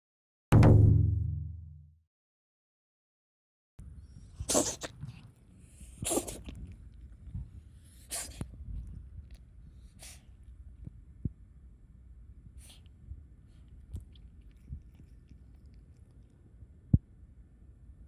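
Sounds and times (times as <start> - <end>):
cat coughing: 4.5 - 5.1, 6.0 - 6.5.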